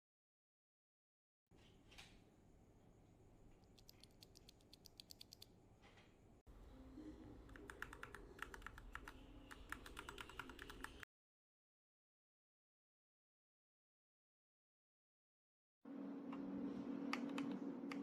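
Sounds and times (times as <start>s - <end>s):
mechanical keyboard typing: 7.5s - 11.0s.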